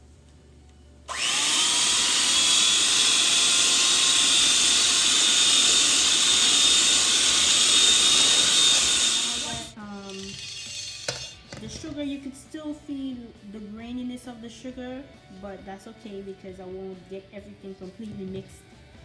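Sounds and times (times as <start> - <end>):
electric hand mixer whine: 1.1 - 9.8.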